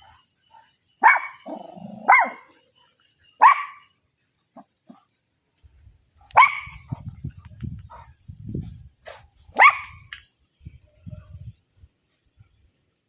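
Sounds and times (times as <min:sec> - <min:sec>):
dog barking: 0:00.0 - 0:02.5, 0:03.4 - 0:03.9, 0:06.3 - 0:07.1, 0:09.0 - 0:10.0.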